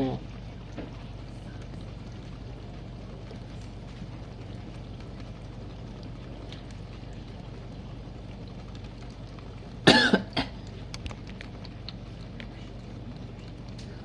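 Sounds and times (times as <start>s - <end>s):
dishwasher humming: 0.0s - 14.0s
person coughing: 9.9s - 10.6s.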